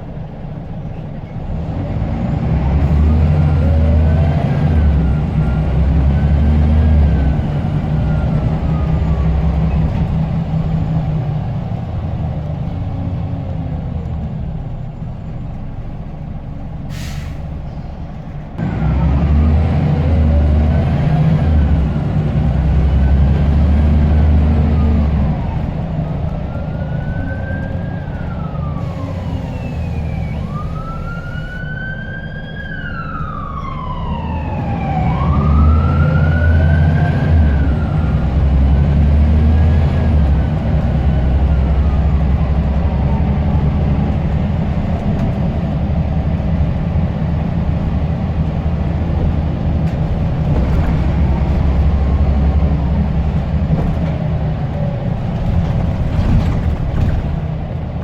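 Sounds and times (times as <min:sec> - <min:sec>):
bus diesel engine under load: 0:00.0 - 0:58.0
turbocharger whistling: 0:26.5 - 0:31.7.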